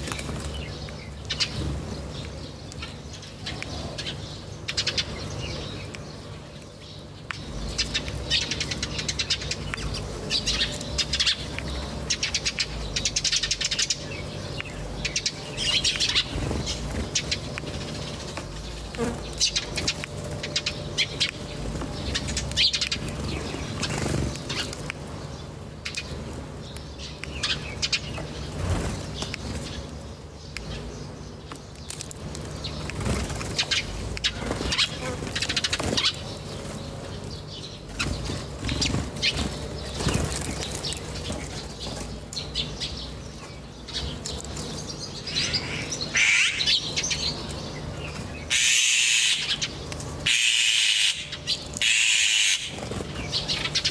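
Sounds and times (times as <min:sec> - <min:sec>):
wings fluttering: 0:00.0 - 0:00.7, 0:07.3 - 0:25.2, 0:27.4 - 0:29.9, 0:31.8 - 0:37.3, 0:37.9 - 0:42.4, 0:44.1 - 0:53.9
small birds chirping: 0:00.0 - 0:53.9
steady low hum: 0:00.0 - 0:53.9.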